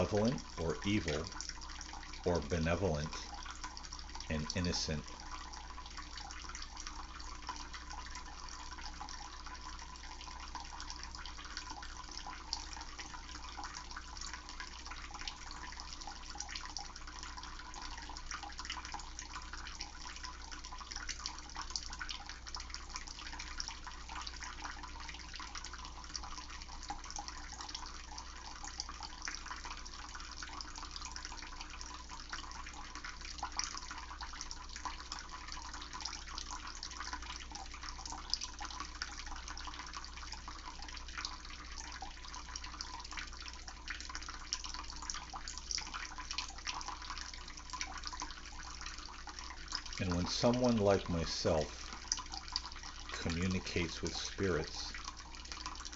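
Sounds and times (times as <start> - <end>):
running water splashing: 46.6 - 55.9.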